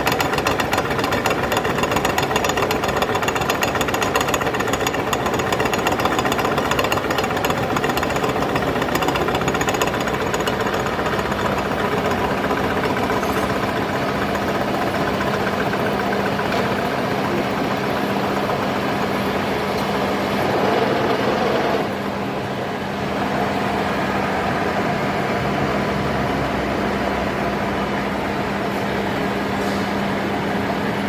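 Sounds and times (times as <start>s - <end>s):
rotary tiller engine humming: 0.0s - 22.0s.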